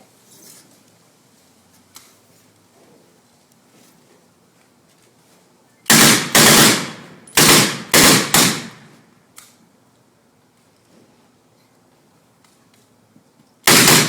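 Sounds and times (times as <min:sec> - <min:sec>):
submachine gun shots: 0:05.9 - 0:08.9, 0:13.7 - 0:14.0.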